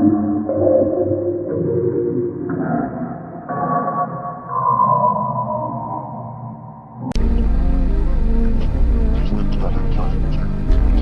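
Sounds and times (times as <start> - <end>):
dark droning ambient tones: 7.1 - 11.0
gong-like tones: 7.1 - 11.0.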